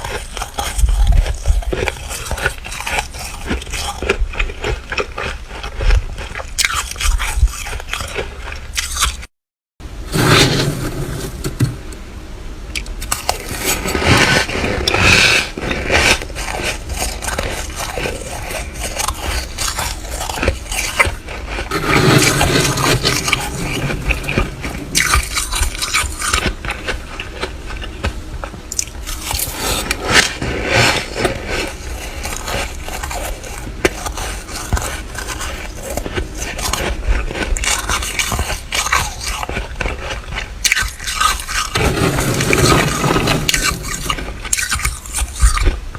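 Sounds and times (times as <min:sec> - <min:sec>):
frost being chewed and crunched: 0:00.0 - 0:09.3, 0:12.7 - 0:45.9
scraping: 0:10.0 - 0:12.0, 0:13.1 - 0:40.2, 0:41.2 - 0:45.6.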